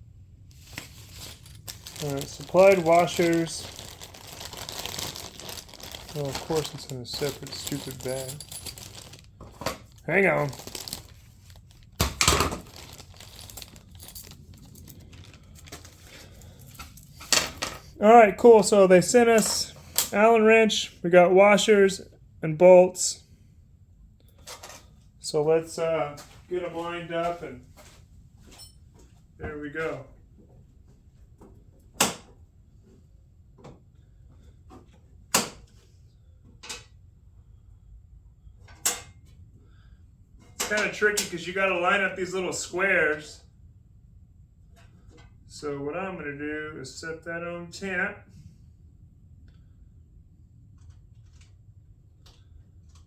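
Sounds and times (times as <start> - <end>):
plastic bag tearing and crinkling: 0.7 - 15.9.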